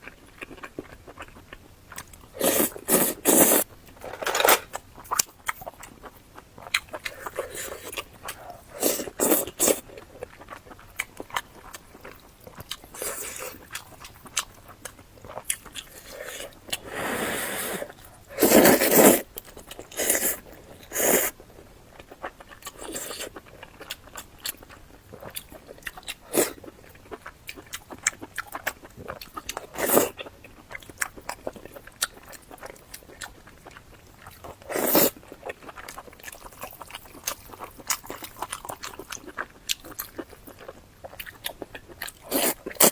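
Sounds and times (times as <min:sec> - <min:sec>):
chewing and crunching: 0:00.0 - 0:16.9, 0:17.8 - 0:42.9.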